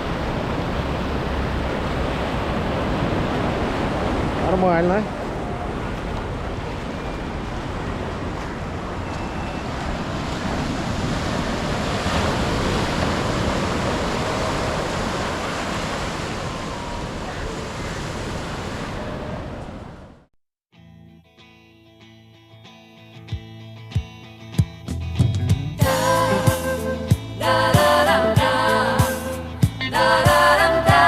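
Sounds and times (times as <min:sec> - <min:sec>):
wind on microphone: 0:00.0 - 0:20.2
sea surf washing: 0:00.0 - 0:20.3, 0:25.8 - 0:31.0.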